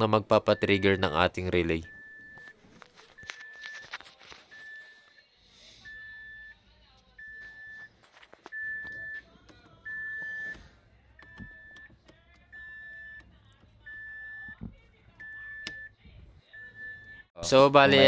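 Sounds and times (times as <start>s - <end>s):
car warning chime beeping: 0.4s - 2.6s, 8.5s - 14.6s, 15.2s - 17.3s.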